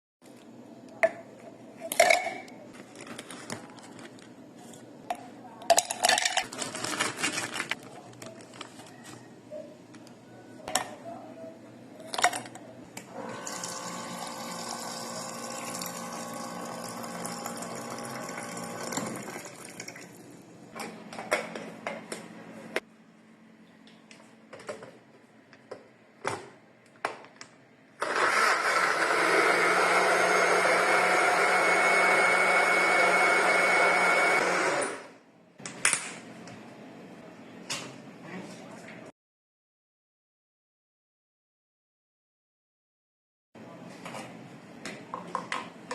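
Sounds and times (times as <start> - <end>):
kitchen clatter of containers: 1.8 - 4.2, 5.1 - 8.9
blender motor running: 13.2 - 19.2, 28.0 - 35.1
liquid pouring into container: 13.4 - 20.3.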